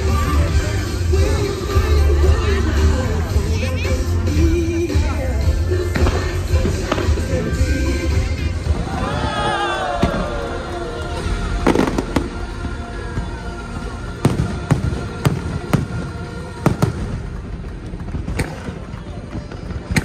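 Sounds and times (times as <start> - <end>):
music playing: 0.0 - 20.0
fireworks bangs: 5.8 - 10.6, 11.3 - 20.0.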